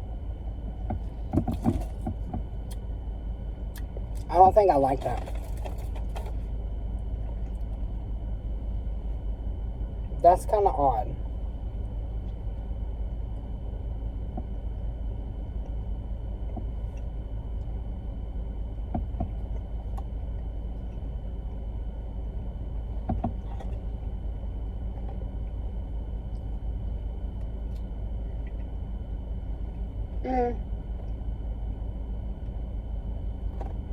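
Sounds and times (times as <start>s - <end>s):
car engine idling: 0.0s - 8.3s.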